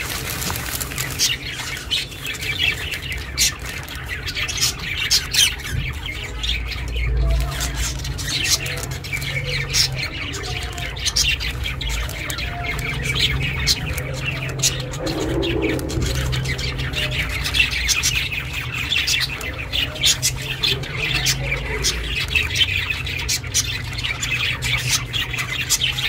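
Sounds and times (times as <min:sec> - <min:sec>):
budgerigars chirping and squawking: 0:00.0 - 0:26.0
low steady hum: 0:12.0 - 0:19.6.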